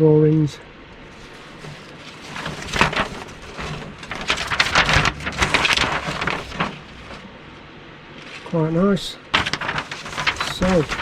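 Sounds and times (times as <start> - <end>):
packaging crinkling: 1.1 - 7.5, 9.3 - 11.0.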